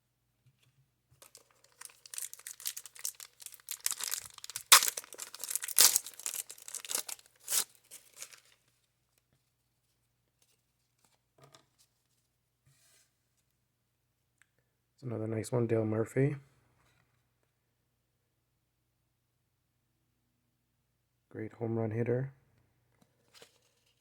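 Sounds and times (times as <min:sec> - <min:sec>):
paper ripping: 0:01.2 - 0:08.4
wax paper wrapper crinkling: 0:01.2 - 0:08.7.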